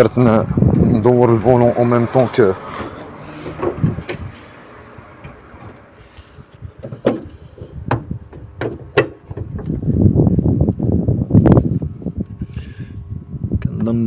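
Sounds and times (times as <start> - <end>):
sharp knocks: 6.8 - 9.7.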